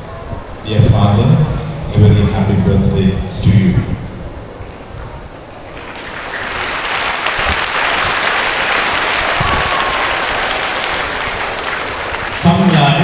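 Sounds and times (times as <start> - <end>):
audience applauding: 5.6 - 13.0.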